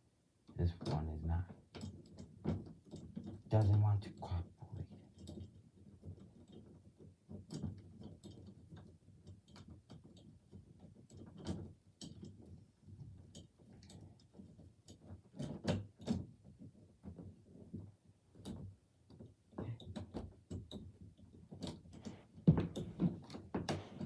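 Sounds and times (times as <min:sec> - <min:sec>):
door and hinges clicking and knocking: 0:05.0 - 0:24.0.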